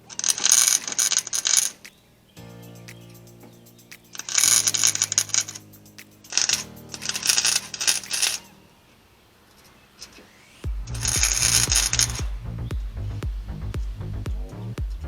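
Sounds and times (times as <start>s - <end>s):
electrical hum: 10.6s - 15.0s.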